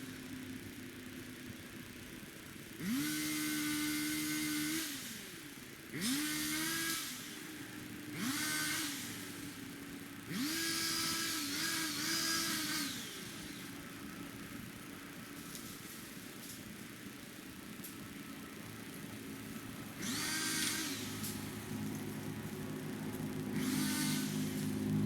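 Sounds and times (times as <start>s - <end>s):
pole saw engine revving: 2.8s - 7.5s, 8.1s - 9.6s, 10.3s - 13.8s, 19.9s - 25.0s.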